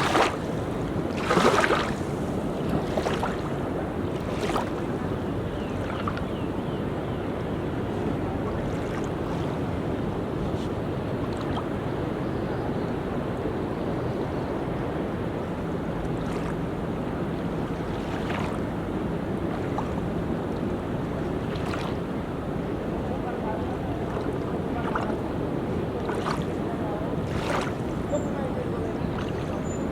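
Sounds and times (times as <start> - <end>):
surf washing onto beach: 0.0 - 6.2, 14.8 - 29.9.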